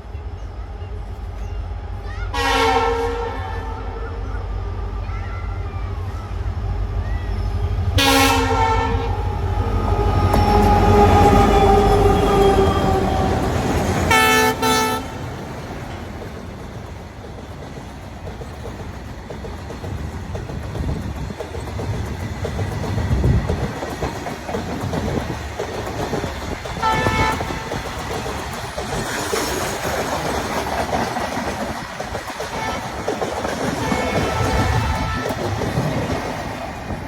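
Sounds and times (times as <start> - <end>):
train rumbling: 0.0 - 37.0
train horn blasts: 2.3 - 4.2, 8.0 - 13.5, 14.1 - 15.3, 26.8 - 27.7, 32.5 - 35.6.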